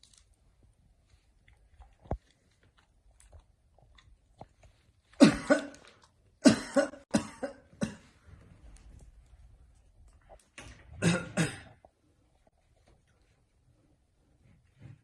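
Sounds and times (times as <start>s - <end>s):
person coughing: 5.2s - 8.1s, 11.0s - 11.8s.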